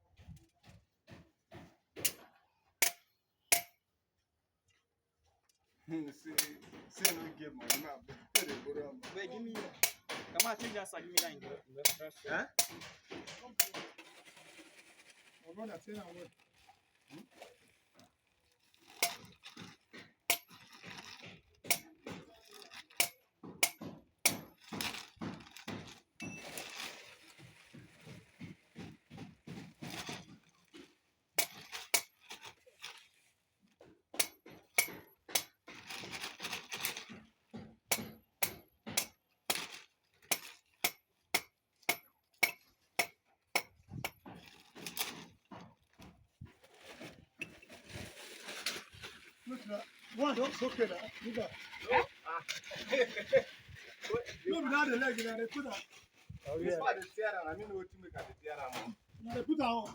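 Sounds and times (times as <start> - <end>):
sharp metallic knocks and clinks: 6.2 - 14.1, 19.0 - 26.8, 34.2 - 45.7.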